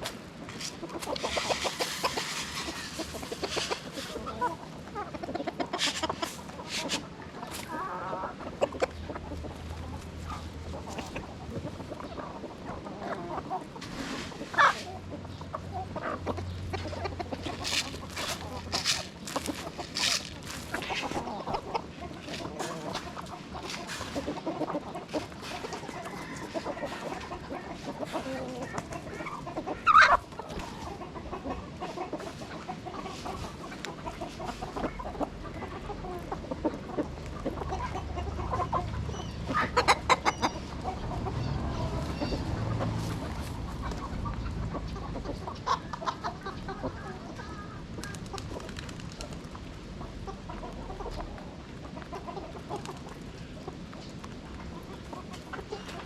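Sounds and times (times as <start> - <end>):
chickens clucking: 0.0 - 56.0
chicken squawking: 0.7 - 9.2, 12.8 - 36.5, 37.5 - 44.3.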